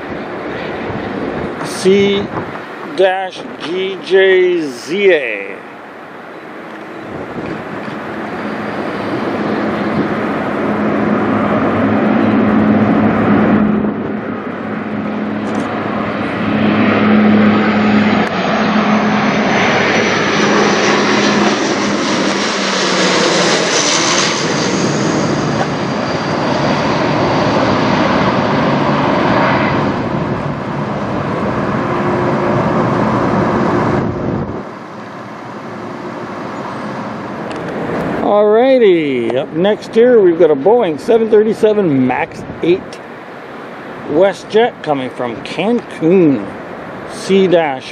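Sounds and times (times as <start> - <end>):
turboprop airliner passing overhead: 0.0 - 47.9.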